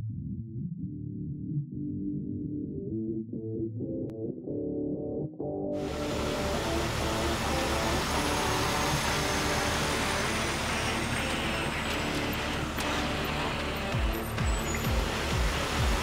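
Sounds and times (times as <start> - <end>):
diesel engine running: 5.8 - 16.0.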